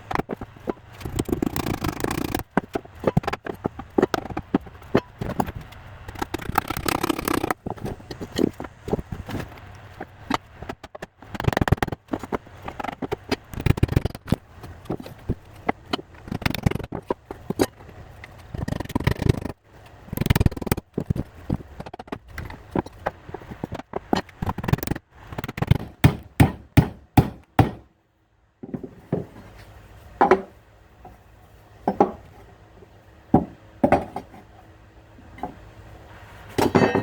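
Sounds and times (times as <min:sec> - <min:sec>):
scraping and handling noise: 0:00.0 - 0:26.0, 0:28.6 - 0:37.0
hammer and mallet striking wood: 0:25.4 - 0:27.9
knocks and taps on wooden boards: 0:33.3 - 0:34.3.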